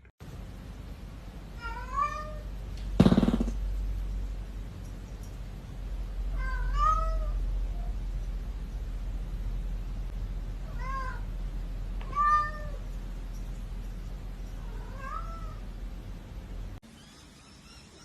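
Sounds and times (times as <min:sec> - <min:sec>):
cat meowing: 0:01.6 - 0:02.4, 0:06.3 - 0:07.9, 0:12.0 - 0:12.8, 0:14.6 - 0:15.6.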